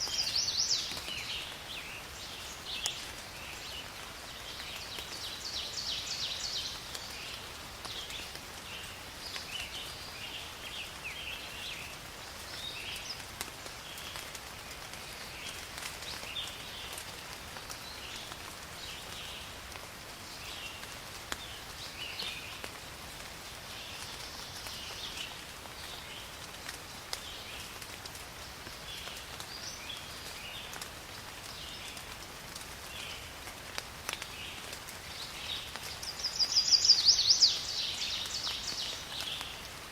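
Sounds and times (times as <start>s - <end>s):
steady rain falling: 0.0s - 39.9s
raindrop ticks: 6.7s - 9.9s, 12.4s - 19.9s, 20.8s - 23.2s, 23.8s - 39.9s.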